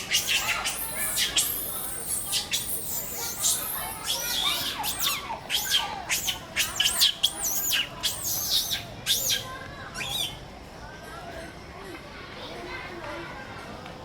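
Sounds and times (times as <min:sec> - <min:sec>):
monkeys squealing: 0:00.0 - 0:09.4, 0:10.0 - 0:10.4.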